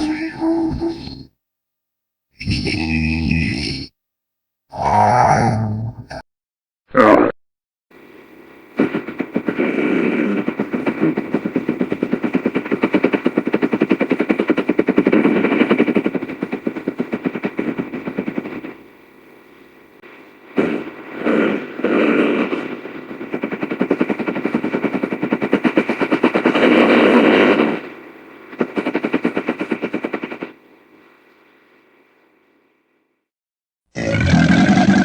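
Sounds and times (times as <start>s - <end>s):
creature rattling chatter-growl: 0.0s - 1.3s, 2.4s - 3.9s, 4.7s - 6.2s, 34.0s - 35.0s.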